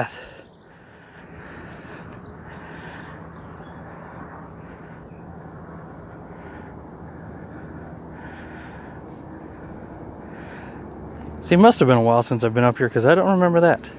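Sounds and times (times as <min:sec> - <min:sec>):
faint bird chirps: 0:00.0 - 0:01.0, 0:01.6 - 0:05.3
faint insect hum: 0:00.0 - 0:13.6
low even drone: 0:00.0 - 0:13.9.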